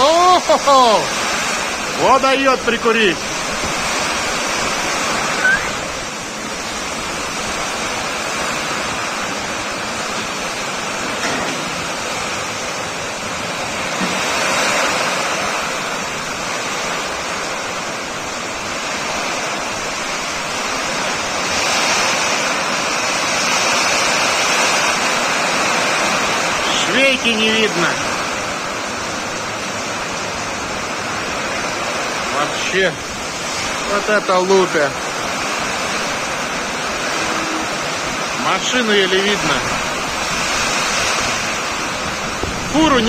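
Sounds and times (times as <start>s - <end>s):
heavy rain pouring: 0.0s - 43.0s.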